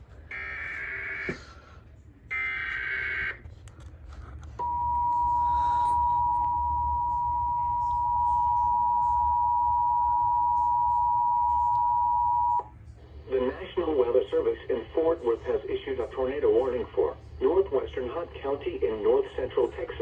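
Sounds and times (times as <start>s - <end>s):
two-tone attention signal: 4.6s - 12.6s.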